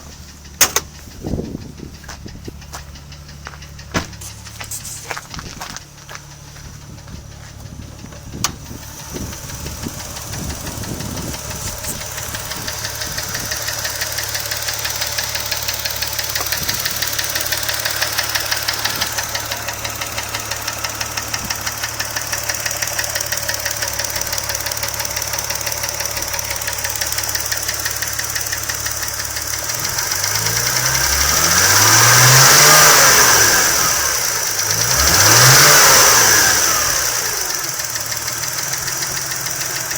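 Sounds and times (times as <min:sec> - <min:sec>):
car engine idling with knock: 0:00.0 - 0:39.9
car engine revving: 0:00.0 - 0:39.9.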